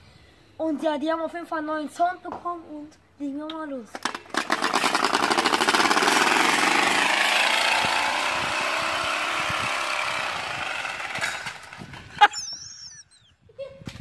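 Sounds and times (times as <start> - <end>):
exhaust crack: 4.0 - 12.3
car exhaust accelerating: 5.1 - 12.0.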